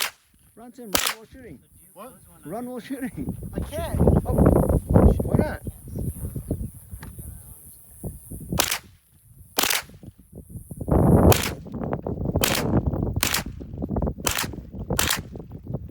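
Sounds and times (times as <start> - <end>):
gunshots: 0.0 - 0.3, 0.9 - 1.4, 8.6 - 8.9, 9.6 - 10.0, 11.3 - 11.7, 12.4 - 13.6, 14.2 - 15.4.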